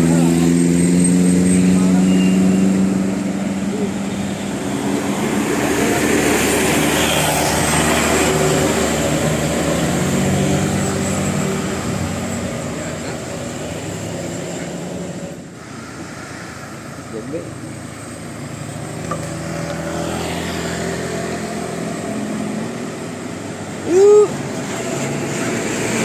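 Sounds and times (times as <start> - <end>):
bus engine drone: 0.0 - 26.0.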